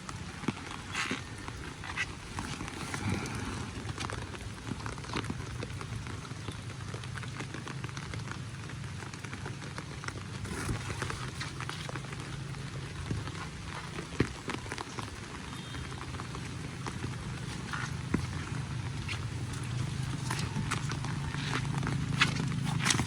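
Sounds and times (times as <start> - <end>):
rain falling: 0.0 - 23.0
low steady rumble: 9.9 - 23.0.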